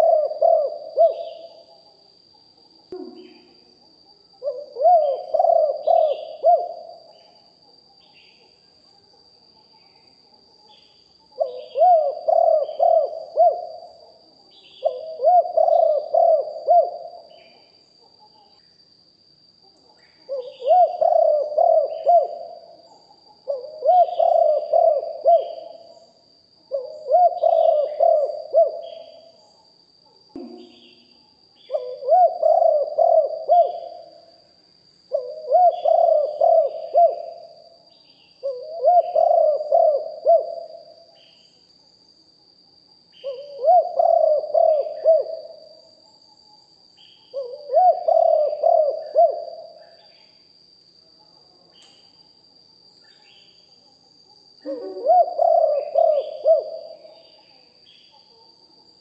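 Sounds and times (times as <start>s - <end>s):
dove cooing: 0.0s - 2.0s, 2.9s - 3.7s, 4.4s - 7.4s, 11.3s - 17.7s, 20.3s - 26.0s, 26.7s - 29.4s, 31.7s - 34.2s, 35.1s - 37.8s, 38.4s - 41.0s, 43.2s - 45.8s, 47.3s - 50.0s, 54.6s - 57.7s
small birds chirping: 19.8s - 34.2s.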